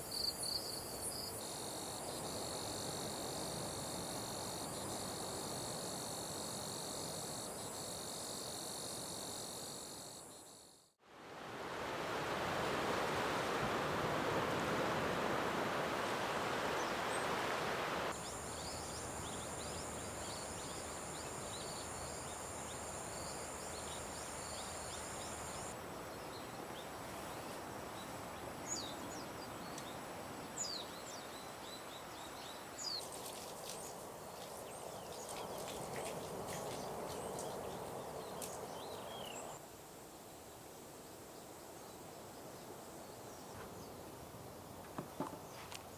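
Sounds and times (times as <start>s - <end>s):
high insect drone: 0.0s - 11.0s, 16.8s - 25.8s.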